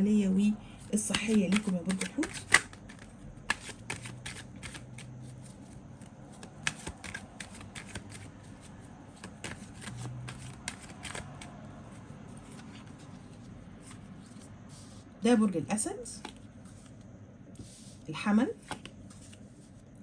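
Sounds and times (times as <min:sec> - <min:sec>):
cards being shuffled: 0:01.0 - 0:14.4.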